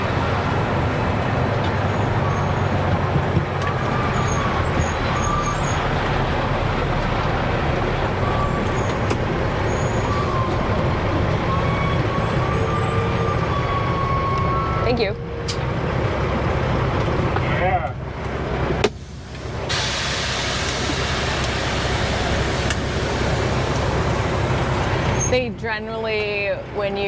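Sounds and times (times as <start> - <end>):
diesel engine rumbling: 0.0 - 27.0.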